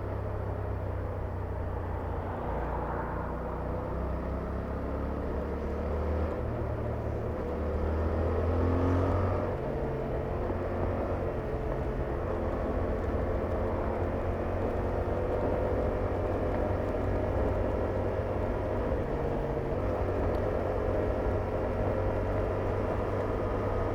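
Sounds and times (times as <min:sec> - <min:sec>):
motorcycle engine revving: 0:03.6 - 0:14.2.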